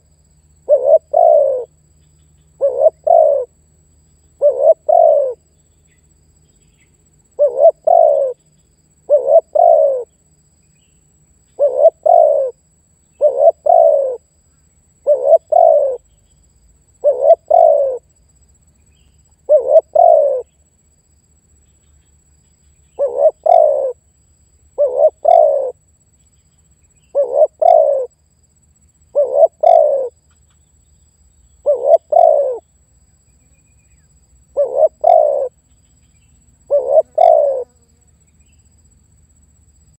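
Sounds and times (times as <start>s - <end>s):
dove cooing: 0.6s - 1.7s, 2.6s - 3.6s, 4.4s - 5.4s, 7.4s - 8.4s, 9.1s - 10.1s, 11.6s - 12.6s, 13.2s - 14.2s, 15.0s - 16.0s, 17.0s - 18.1s, 19.5s - 20.5s, 23.0s - 24.0s, 24.8s - 25.8s, 27.1s - 28.1s, 29.1s - 30.2s, 31.6s - 32.6s, 34.5s - 35.6s, 36.7s - 37.8s.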